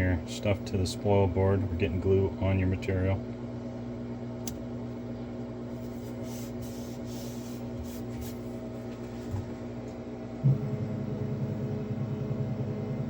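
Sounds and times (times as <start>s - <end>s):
electrical hum: 0.0s - 13.0s
hands rubbing tape: 5.8s - 8.5s.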